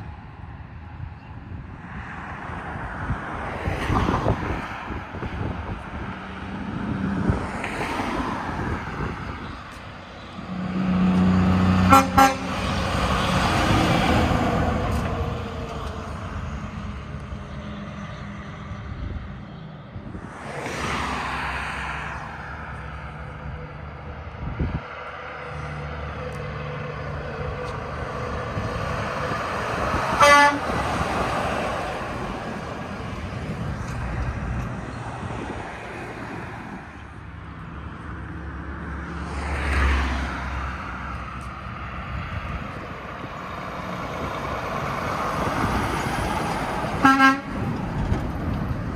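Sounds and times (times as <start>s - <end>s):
road traffic passing: 0.0s - 48.9s
car horn toot: 11.8s - 12.6s, 30.1s - 30.8s, 47.0s - 47.6s.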